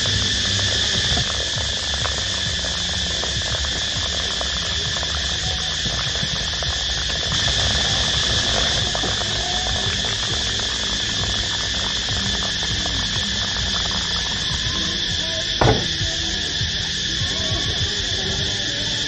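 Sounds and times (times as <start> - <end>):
insects buzzing shrilly: 0.0 - 19.0
low uneven rumble: 0.0 - 19.0.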